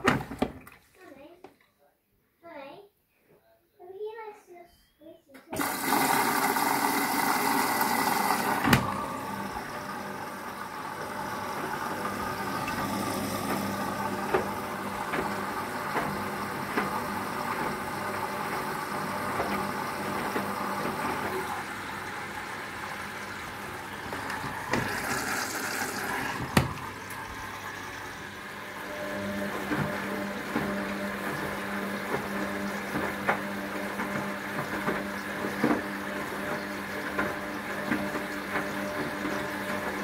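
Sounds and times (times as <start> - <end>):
motor hum: 5.6 - 40.0
water running and splashing: 19.2 - 28.8.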